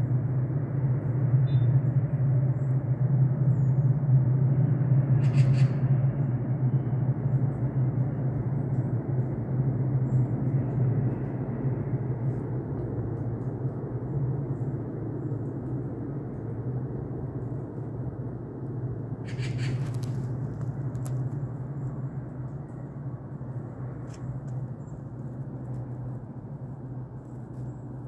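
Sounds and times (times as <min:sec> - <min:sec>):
low outdoor rumble: 0:00.0 - 0:28.0
crackle of sharp clicks: 0:19.6 - 0:21.6.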